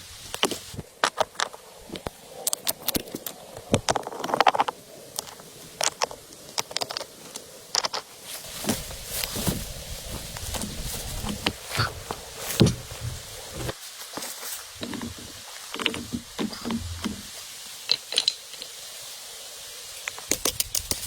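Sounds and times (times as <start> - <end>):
sharp clicks and knocks: 14.8 - 18.7.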